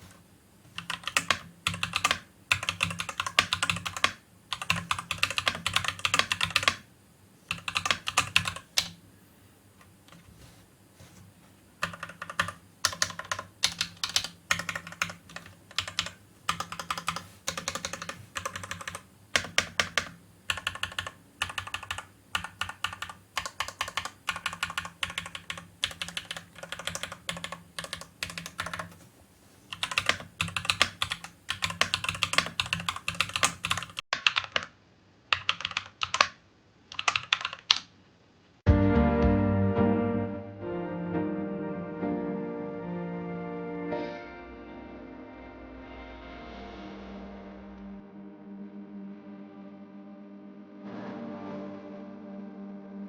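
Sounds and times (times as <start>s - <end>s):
mechanical keyboard typing: 0.0s - 6.9s, 7.5s - 9.0s, 11.8s - 29.0s, 29.7s - 37.9s.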